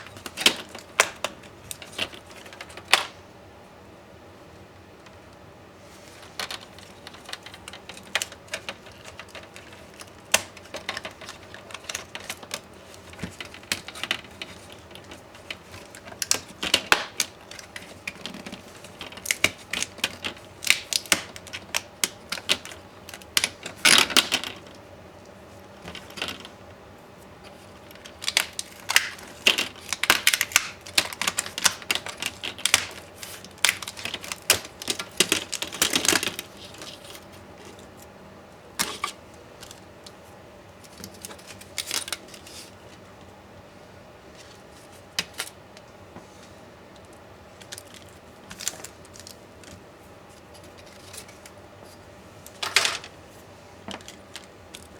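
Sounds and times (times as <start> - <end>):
tools clicking and scraping plastic: 0.0 - 3.1, 6.2 - 24.8, 27.4 - 38.1, 38.8 - 40.2.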